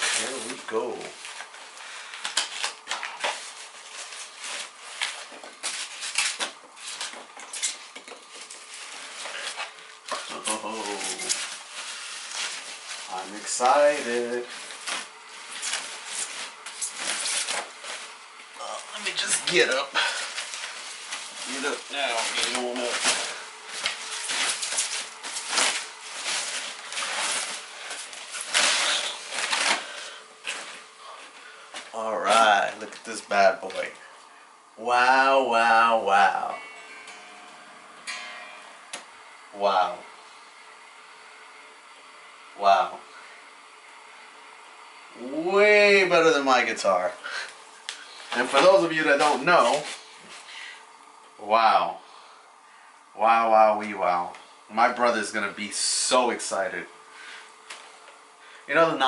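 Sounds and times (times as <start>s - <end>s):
packaging rustling and scraping: 0.0s - 33.0s, 48.0s - 50.5s.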